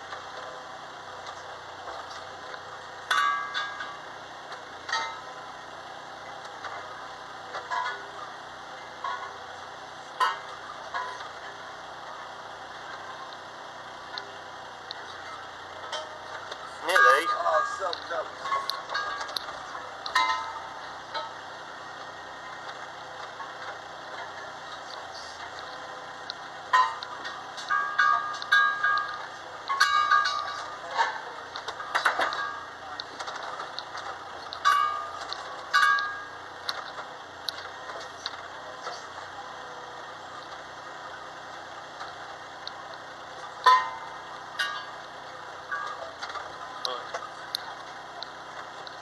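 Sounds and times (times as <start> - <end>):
arcade machine whirring: 0.0 - 49.0
loud sharp metal clanks: 14.9 - 39.0, 43.2 - 47.8.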